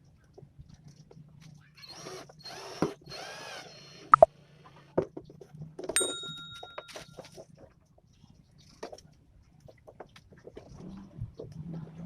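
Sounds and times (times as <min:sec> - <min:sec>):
ringing metallic clink: 0:06.0 - 0:07.2.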